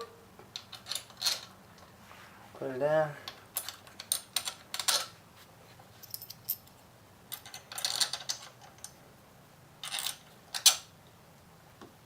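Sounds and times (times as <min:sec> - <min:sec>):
small metal parts clinking: 0:00.5 - 0:01.5, 0:03.5 - 0:05.1, 0:06.0 - 0:09.0, 0:09.8 - 0:10.8.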